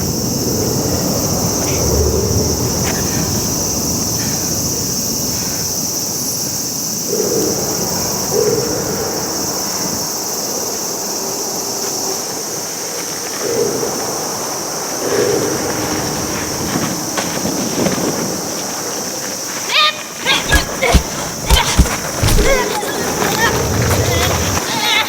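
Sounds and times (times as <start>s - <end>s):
wind: 0.0s - 25.0s
surf: 13.9s - 25.0s.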